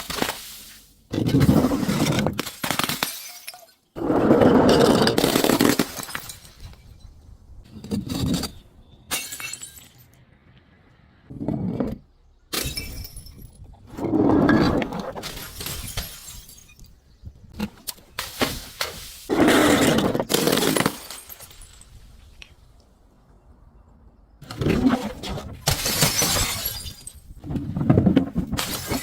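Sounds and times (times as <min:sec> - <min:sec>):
glass bottles shattering: 0:01.5 - 0:03.9, 0:04.7 - 0:07.1, 0:07.8 - 0:10.1, 0:12.5 - 0:13.6, 0:15.2 - 0:17.0, 0:18.1 - 0:22.1, 0:24.8 - 0:27.4, 0:28.3 - 0:29.0.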